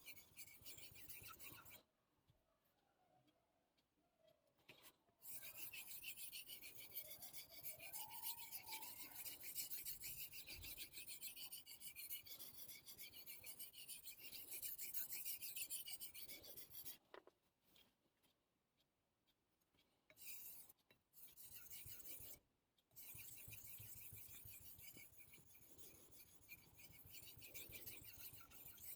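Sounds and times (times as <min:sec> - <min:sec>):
knife scraping on whetstone: 0:00.0 - 0:01.8, 0:05.2 - 0:17.0, 0:20.2 - 0:22.4, 0:23.0 - 0:28.9.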